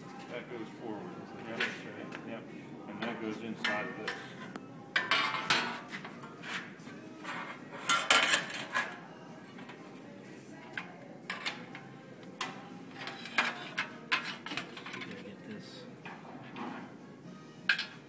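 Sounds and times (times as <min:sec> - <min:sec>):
metal car parts clanking: 0:05.0 - 0:06.1.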